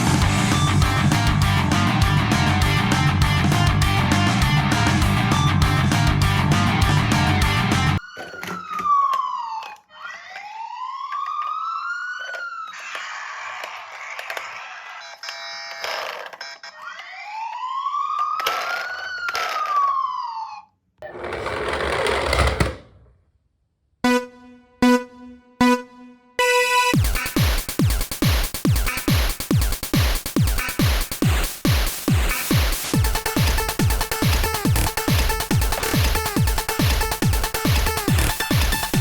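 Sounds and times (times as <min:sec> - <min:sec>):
toy siren wailing: 0:08.0 - 0:20.7
electronic dance music: 0:24.1 - 0:39.0.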